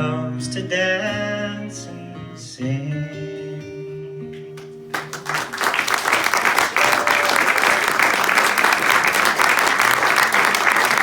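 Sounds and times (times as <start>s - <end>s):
audience applause: 4.9s - 11.0s.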